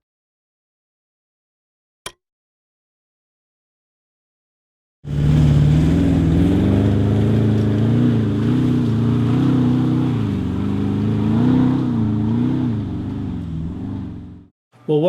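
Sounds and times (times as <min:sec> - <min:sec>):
vehicle engine revving: 0:05.1 - 0:14.5.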